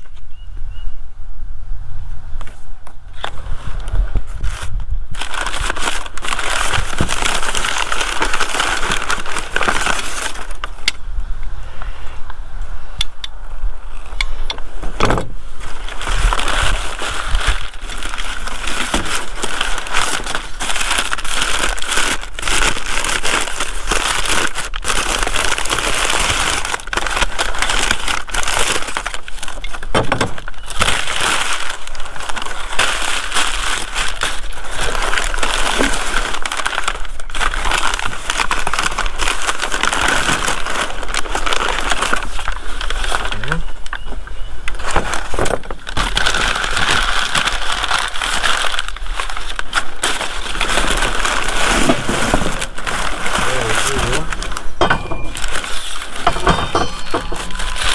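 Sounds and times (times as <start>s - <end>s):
packing material crinkling: 3.2s - 11.0s, 13.9s - 57.9s
metal parts clicking and knocking: 54.7s - 57.9s.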